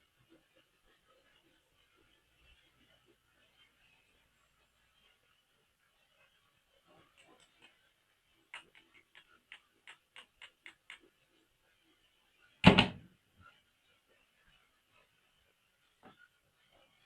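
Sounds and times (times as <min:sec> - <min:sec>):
small ticks: 0:06.1 - 0:11.5
loud sharp snap: 0:12.6 - 0:13.0.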